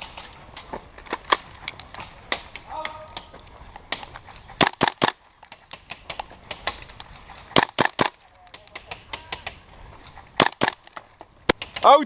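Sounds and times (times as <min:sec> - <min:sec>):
airsoft rifle shots: 0:04.0 - 0:06.9, 0:07.6 - 0:09.6, 0:10.4 - 0:10.9.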